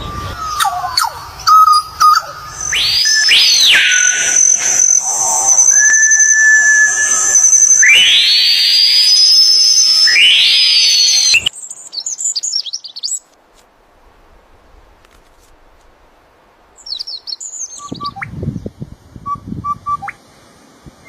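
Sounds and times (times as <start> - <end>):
high quick bird chirps: 1.4 - 13.2
rising whistle-like sweep: 1.5 - 11.5
short steady tones: 2.5 - 11.5.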